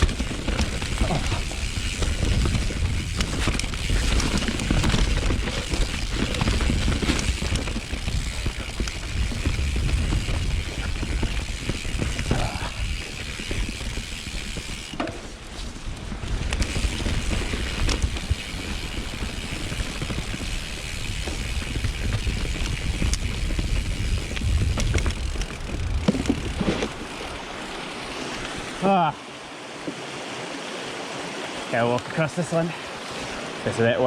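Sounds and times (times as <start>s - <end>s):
bike frame rattle: 0.0s - 27.5s
bike tyre noise: 0.0s - 32.0s
sharp knocks from roots and rocks: 24.2s - 27.1s.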